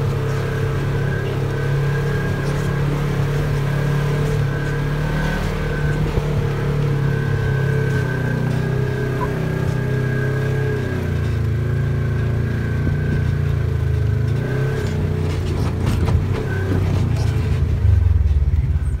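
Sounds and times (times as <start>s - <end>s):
vehicle engine running: 0.0s - 19.0s
high-pitched belt squeal: 0.9s - 10.4s.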